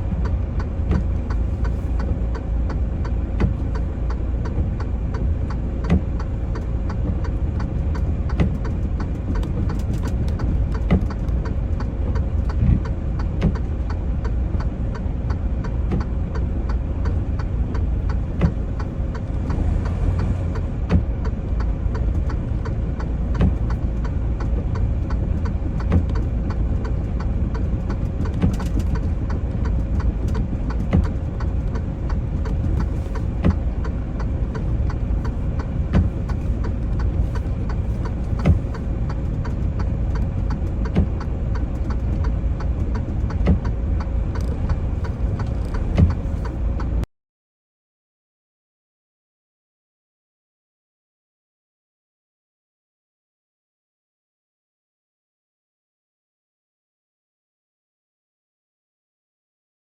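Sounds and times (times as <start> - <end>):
diesel engine rumble: 0.0 - 47.1.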